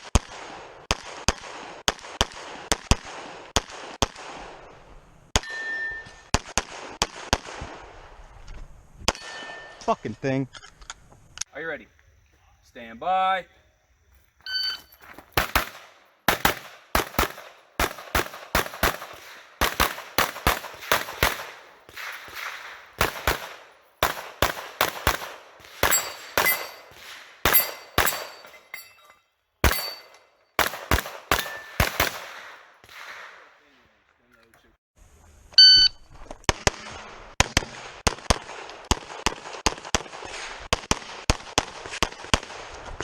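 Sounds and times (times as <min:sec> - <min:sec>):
shot timer beep: 0:14.5 - 0:15.0, 0:35.6 - 0:36.0
pistol shots: 0:15.3 - 0:29.0, 0:29.6 - 0:33.7.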